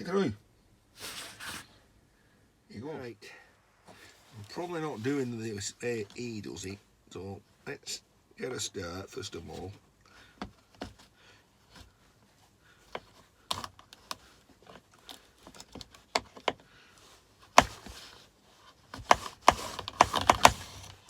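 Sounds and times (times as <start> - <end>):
clicks and knocks of wire stripping: 13.0 - 16.6, 19.0 - 21.0.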